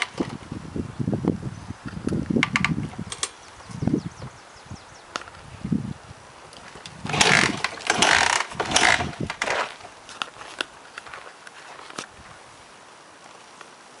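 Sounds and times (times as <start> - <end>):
motorbike engine turning over: 6.7 - 10.0.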